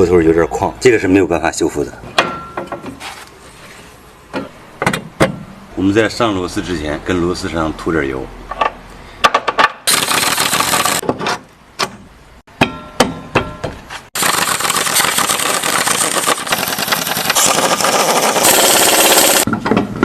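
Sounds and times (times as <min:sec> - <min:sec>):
impact wrench driving bolts: 0:14.2 - 0:19.5.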